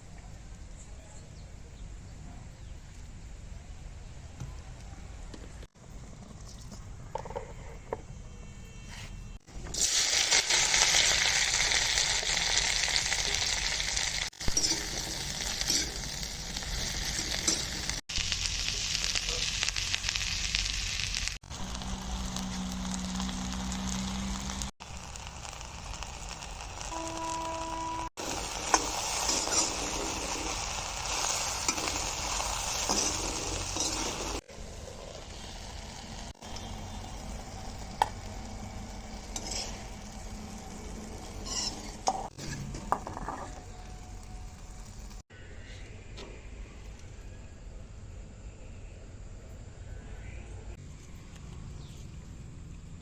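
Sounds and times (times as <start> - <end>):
okra sizzling in oil: 9.4 - 45.3.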